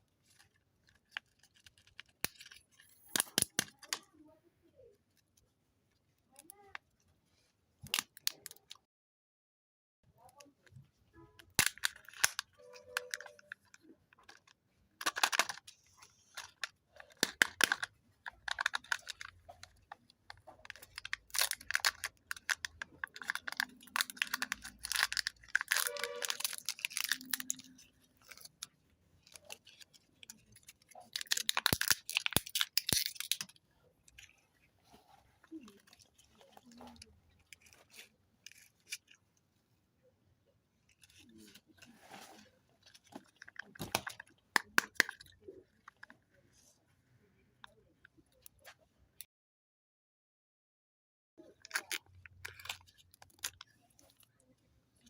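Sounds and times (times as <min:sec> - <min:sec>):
plastic eggs clicking: 0:16.4 - 0:28.5
foil wrappers tearing and crinkling: 0:23.2 - 0:28.5.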